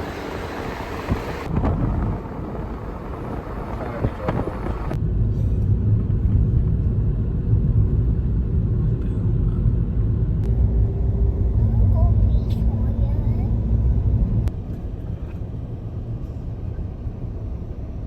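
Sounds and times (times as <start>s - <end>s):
car road rumble from inside: 0.0s - 18.0s
outdoor noise: 0.0s - 18.0s
faint voices: 2.2s - 5.0s.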